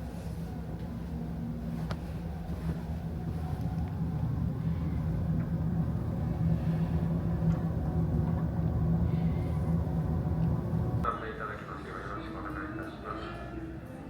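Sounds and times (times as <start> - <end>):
ship machinery hum: 0.0 - 11.1.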